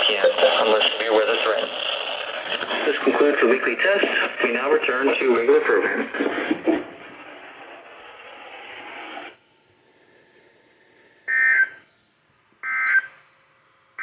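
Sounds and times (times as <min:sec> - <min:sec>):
warbling digital data tones: 0:00.0 - 0:00.9
radio hiss: 0:00.0 - 0:07.4.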